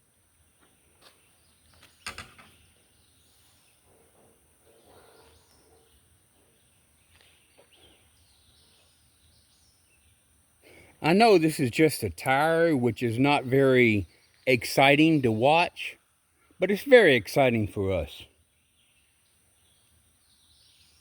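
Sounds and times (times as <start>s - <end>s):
faint bird chirps: 0.6s - 11.0s.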